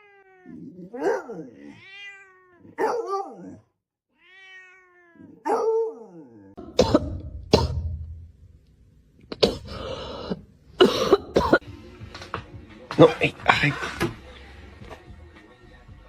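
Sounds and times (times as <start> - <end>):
cat meowing: 0.0 - 2.8, 4.1 - 5.5.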